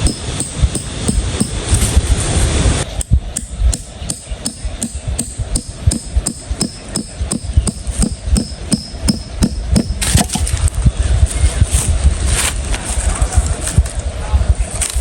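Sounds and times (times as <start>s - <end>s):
hammer striking nail: 0.0s - 2.0s, 3.0s - 10.4s
rough handling and scraping: 1.3s - 2.5s, 9.7s - 15.0s.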